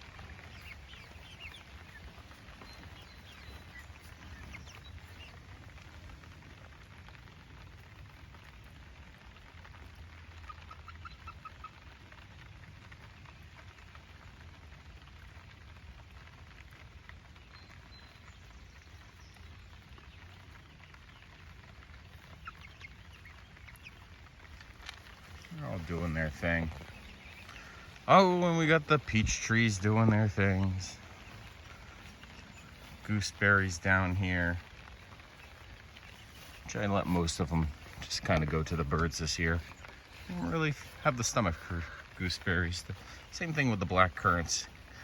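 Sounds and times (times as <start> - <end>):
chickens clucking: 0.0 - 14.0, 19.0 - 45.0
rain patter: 0.0 - 45.0.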